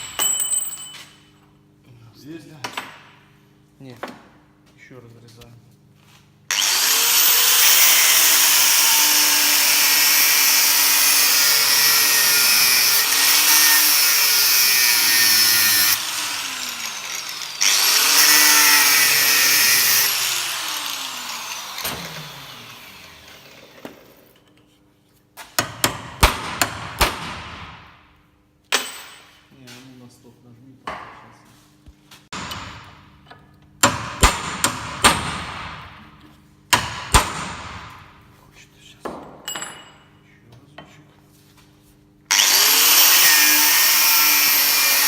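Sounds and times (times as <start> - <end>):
angle grinder cutting metal: 6.5 - 24.1, 42.3 - 45.0.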